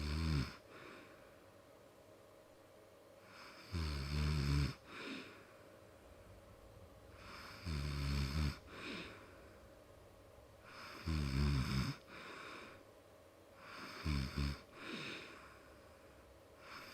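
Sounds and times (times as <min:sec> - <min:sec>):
person snoring: 0:00.0 - 0:00.9, 0:03.3 - 0:05.4, 0:07.2 - 0:09.3, 0:10.6 - 0:12.8, 0:13.6 - 0:15.5
faint breath: 0:00.6 - 0:01.6, 0:04.8 - 0:06.5, 0:08.6 - 0:09.8, 0:12.0 - 0:12.9, 0:14.7 - 0:16.9.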